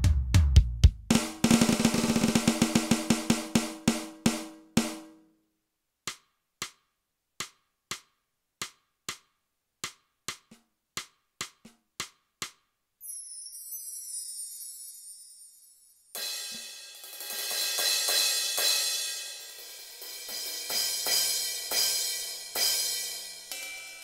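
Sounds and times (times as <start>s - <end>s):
electronic snare roll: 1.1s - 4.4s
shimmering cymbal: 13.0s - 24.0s.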